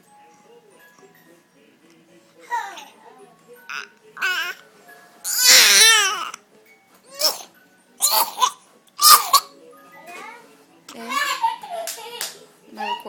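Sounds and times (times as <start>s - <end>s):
boy coughing: 7.2s - 9.5s.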